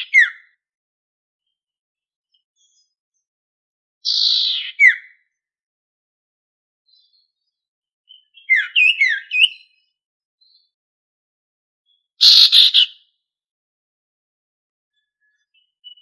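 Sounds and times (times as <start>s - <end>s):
songbird calling: 0.0s - 0.6s, 8.1s - 10.7s, 11.9s - 13.1s.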